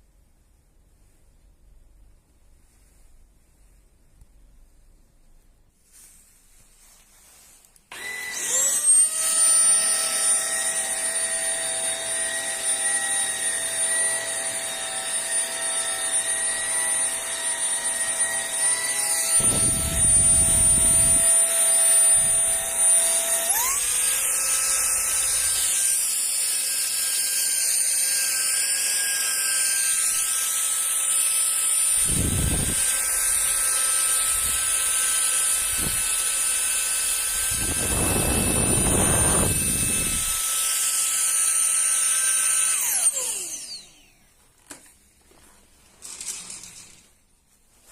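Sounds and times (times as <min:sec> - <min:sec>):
vacuum cleaner motor whine: 0:07.9 - 0:44.9.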